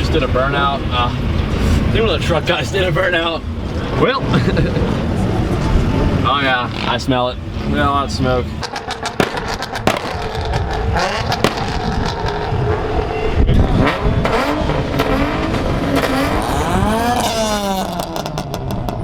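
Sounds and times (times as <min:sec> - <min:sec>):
car engine revving: 0:00.0 - 0:19.0
sharp exhaust pops: 0:08.6 - 0:19.0.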